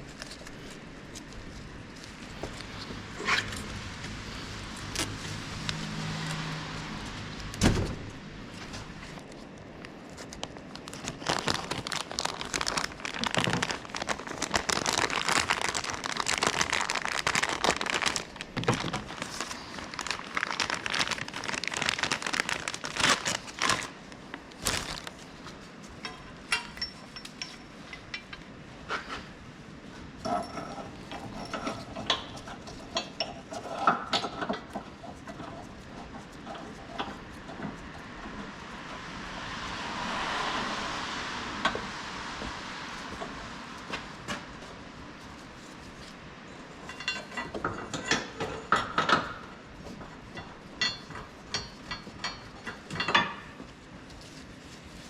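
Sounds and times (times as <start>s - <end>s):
tools clattering and scraping: 30.2s - 37.8s, 46.7s - 49.5s.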